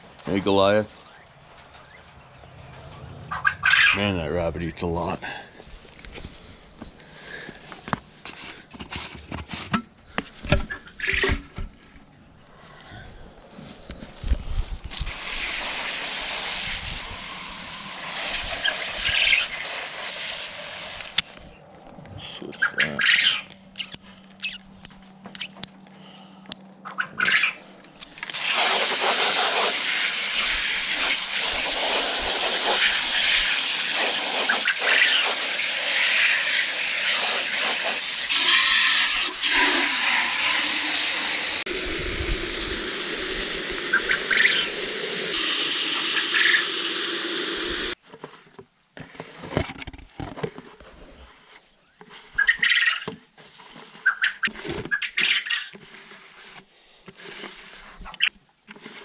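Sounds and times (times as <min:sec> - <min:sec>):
water running hard into container: 0:14.9 - 0:21.2, 0:28.2 - 0:48.0.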